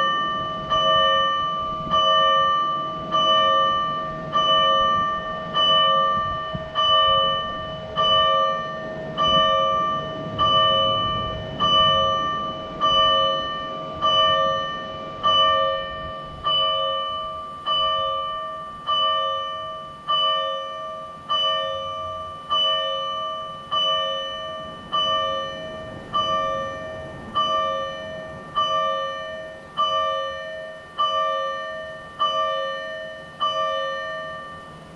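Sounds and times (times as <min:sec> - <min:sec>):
fire engine electronic warning bell: 0:00.0 - 0:34.9.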